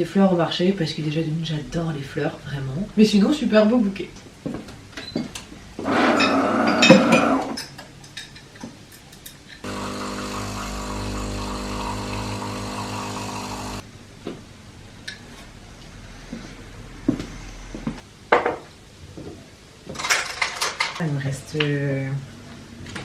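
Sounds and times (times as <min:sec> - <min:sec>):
small electric motor running: 0:09.6 - 0:13.8.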